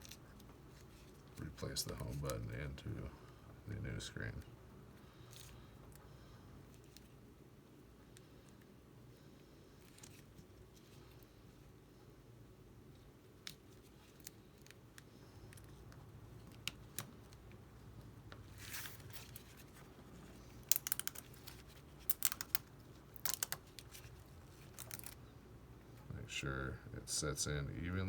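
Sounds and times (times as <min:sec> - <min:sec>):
small parts and tools clicking: 0:18.3 - 0:25.3.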